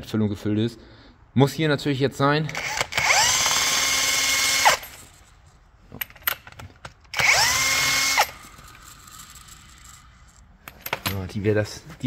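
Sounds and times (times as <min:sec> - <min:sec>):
cordless drill running: 0:02.6 - 0:05.0, 0:07.1 - 0:10.0.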